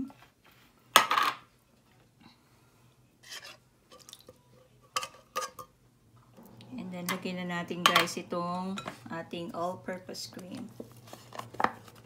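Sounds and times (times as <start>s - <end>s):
scraping in a bowl: 3.2s - 4.1s.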